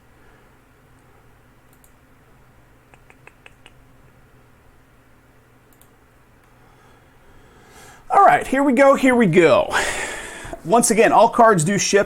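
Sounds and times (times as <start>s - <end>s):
low room hum: 0.0s - 12.0s
faint light clicks: 5.7s - 6.6s.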